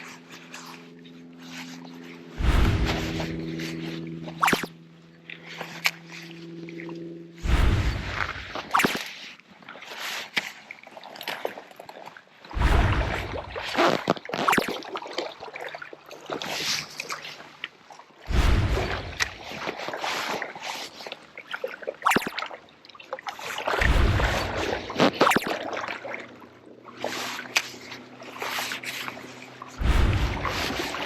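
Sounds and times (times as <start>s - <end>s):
water sloshing and trickling: 0.0s - 31.0s
deep water surges: 2.4s - 3.7s, 7.4s - 8.8s, 12.5s - 14.6s, 18.3s - 20.4s, 23.7s - 31.0s.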